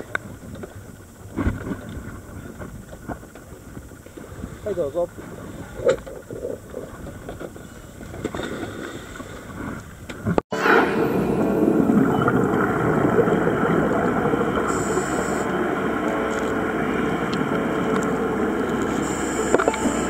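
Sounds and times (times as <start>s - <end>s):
water noise: 0.0s - 20.0s
wind: 0.0s - 20.0s
boat engine running: 9.9s - 20.0s.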